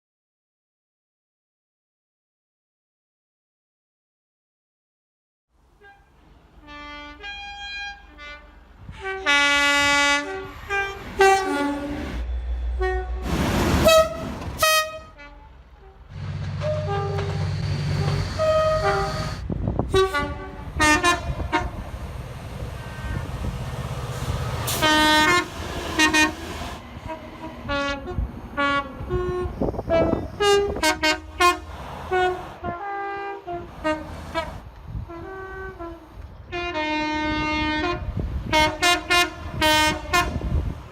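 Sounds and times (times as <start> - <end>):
locomotive horns tooting: 5.8 - 40.7
train running rumble: 8.7 - 36.4.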